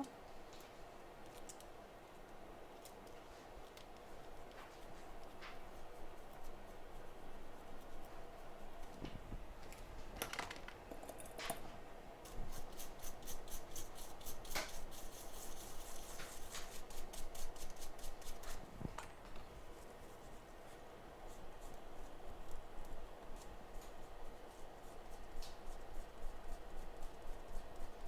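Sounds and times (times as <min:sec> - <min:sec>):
scrubbing a circuit board: 0:12.5 - 0:18.6.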